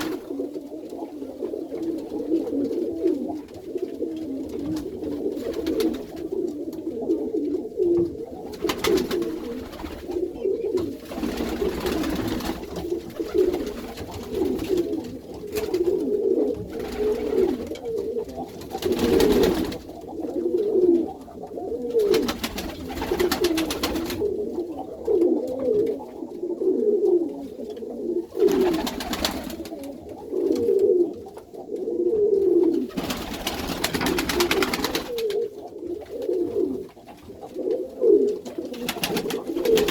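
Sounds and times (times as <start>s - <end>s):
pigeons cooing: 0.0s - 39.9s.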